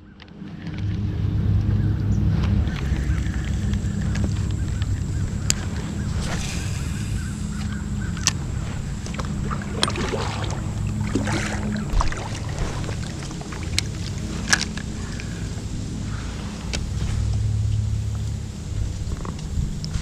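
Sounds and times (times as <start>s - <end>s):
low rumble: 0.0s - 20.0s
paddle splashing in water: 8.4s - 17.2s.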